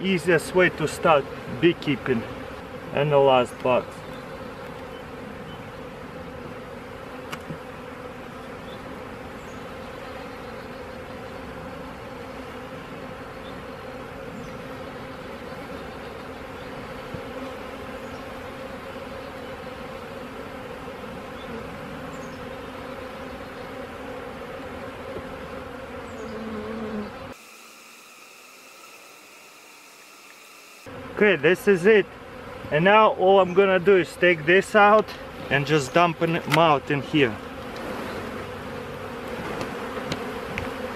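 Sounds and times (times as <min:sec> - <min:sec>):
bees buzzing: 0:00.0 - 0:40.9.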